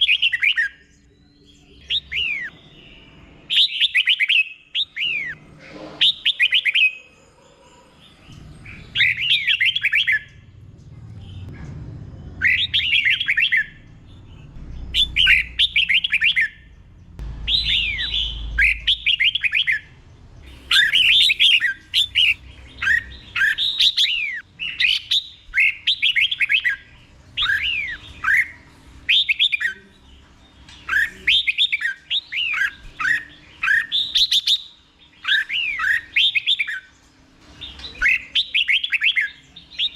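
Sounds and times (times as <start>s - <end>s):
bulbul singing: 0.0s - 5.4s, 6.0s - 11.5s, 12.1s - 39.9s
faint low rumble: 7.2s - 16.0s, 16.7s - 22.8s.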